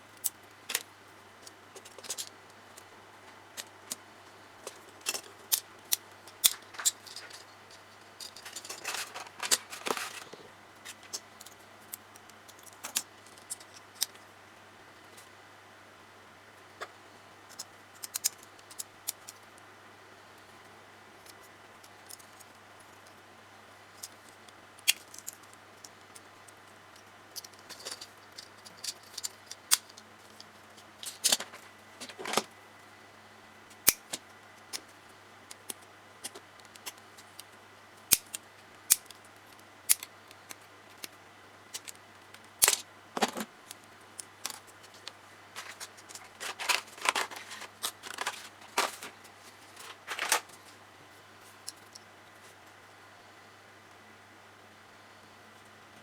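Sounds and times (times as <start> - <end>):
faint steady hum: 0.0 - 56.0
plastic parts clicking and snapping: 0.2 - 2.9, 4.6 - 14.2, 17.5 - 19.4, 24.0 - 26.3, 27.0 - 32.5, 35.5 - 37.5, 38.1 - 49.2, 49.8 - 50.6.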